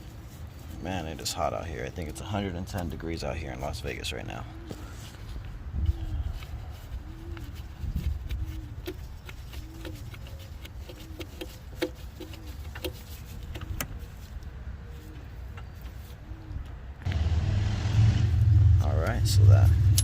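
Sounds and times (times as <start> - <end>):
steady low rumble: 16.9 - 20.0.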